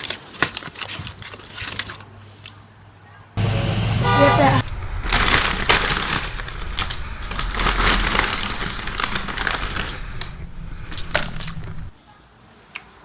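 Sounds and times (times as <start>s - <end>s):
crunching and crackling: 0.0s - 2.1s, 4.7s - 11.9s
low steady hum: 3.4s - 11.9s.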